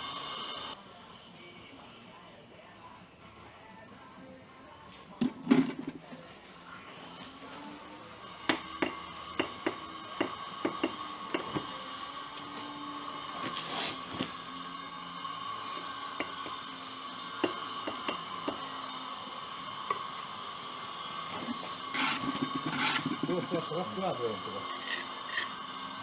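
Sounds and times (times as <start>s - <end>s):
hammer striking brick: 8.4s - 11.8s, 15.8s - 18.8s, 21.4s - 23.4s.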